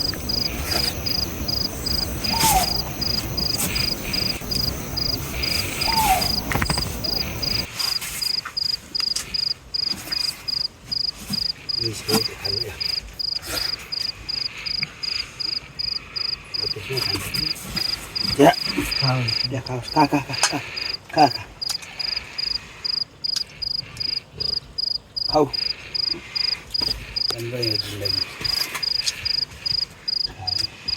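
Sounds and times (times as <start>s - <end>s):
low background rumble: 0.0s - 7.7s
crickets chirping: 0.0s - 30.9s.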